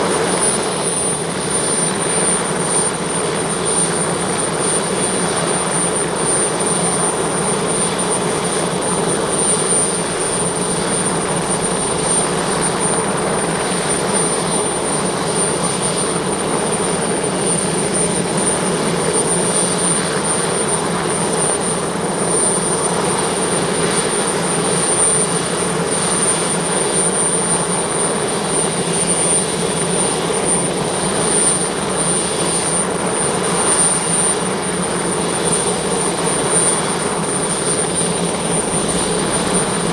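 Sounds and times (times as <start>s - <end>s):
helicopter turbine engine whine: 0.0s - 39.9s.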